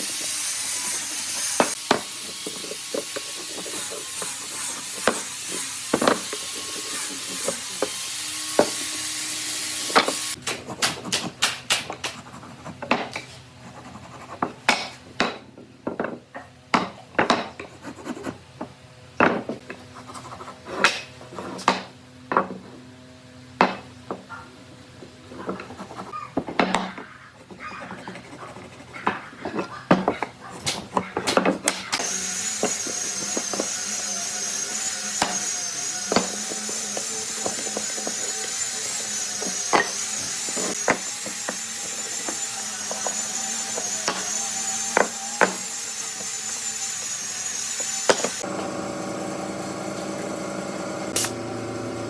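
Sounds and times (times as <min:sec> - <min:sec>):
tools and wood knocking: 0:01.6 - 0:08.0, 0:08.6 - 0:08.9, 0:14.4 - 0:17.8, 0:18.6 - 0:19.8, 0:25.0 - 0:27.7, 0:29.0 - 0:34.0, 0:35.1 - 0:46.4, 0:47.7 - 0:48.5.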